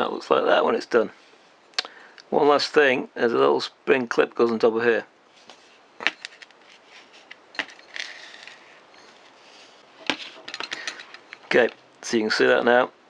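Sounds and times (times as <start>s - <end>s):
metal parts handling noise: 6.0s - 11.8s
small metal clicks: 10.4s - 11.8s.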